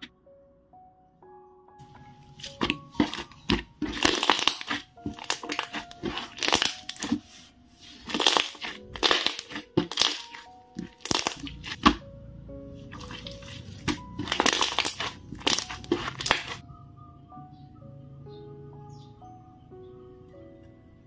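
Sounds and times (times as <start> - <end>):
soft background music: 0.0 - 21.0
slime squelching: 1.8 - 16.6.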